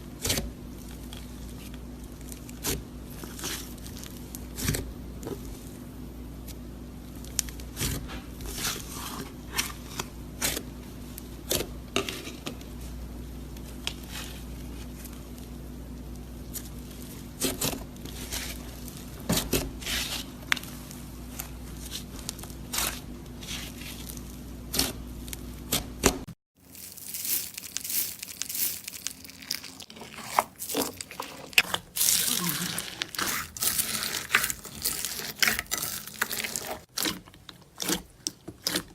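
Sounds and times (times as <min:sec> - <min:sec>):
slime crackling and squelching: 0:26.6 - 0:38.9.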